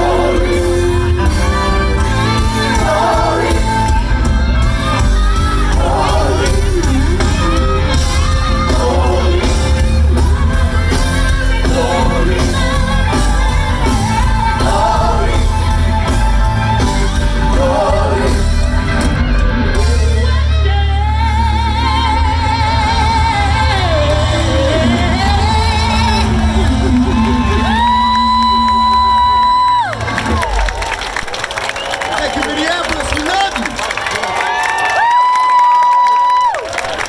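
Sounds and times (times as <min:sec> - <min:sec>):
lead singer with vibrato: 0:00.0 - 0:19.2, 0:19.8 - 0:29.7
heavy bass: 0:00.0 - 0:31.1
live band playing gospel music: 0:00.0 - 0:37.0.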